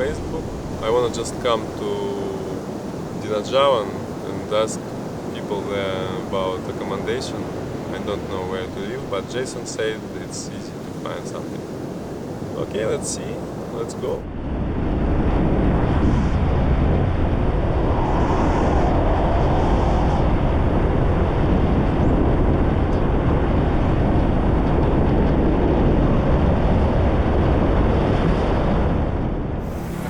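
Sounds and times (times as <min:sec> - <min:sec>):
wind rush: 0:00.0 - 0:30.0.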